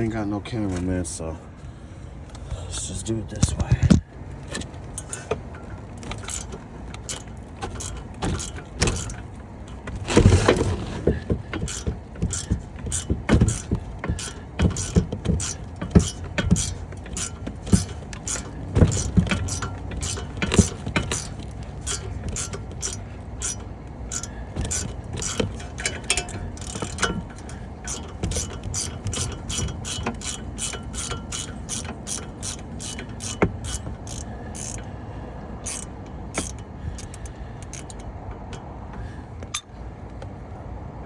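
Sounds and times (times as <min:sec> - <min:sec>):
rattling clatter: 0:03.3 - 0:39.8
metal tools knocking and clanking: 0:03.4 - 0:34.9, 0:35.6 - 0:38.7
socket ratchet clicking: 0:06.0 - 0:09.8, 0:11.5 - 0:34.9, 0:35.6 - 0:38.7.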